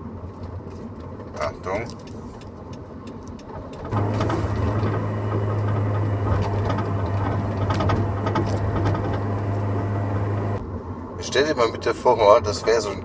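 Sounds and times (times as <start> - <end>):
exhaust knocking and rattling: 3.6 - 10.6
car engine drone: 3.7 - 11.9.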